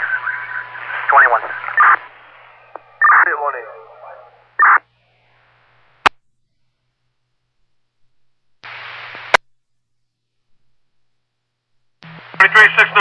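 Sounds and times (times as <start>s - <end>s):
radio carrier hiss and hum: 0.0s - 6.2s, 8.6s - 9.4s, 12.0s - 13.0s.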